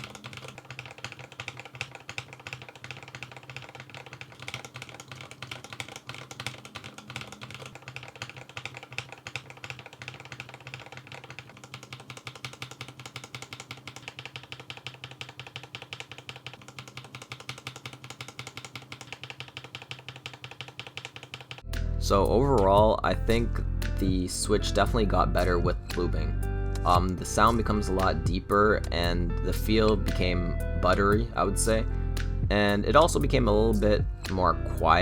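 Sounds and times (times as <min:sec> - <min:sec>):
mechanical keyboard typing: 0:00.0 - 0:21.7.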